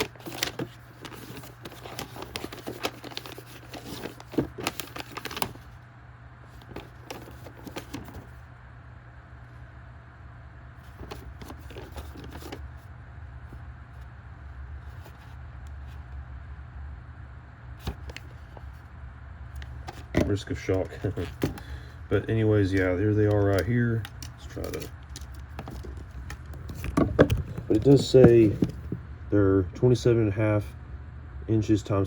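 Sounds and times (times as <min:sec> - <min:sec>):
paper rustling and crinkling: 0:00.0 - 0:05.8, 0:06.5 - 0:08.4, 0:10.8 - 0:12.6, 0:14.8 - 0:16.0, 0:17.8 - 0:18.8, 0:19.6 - 0:29.0
low steady hum: 0:00.0 - 0:32.0.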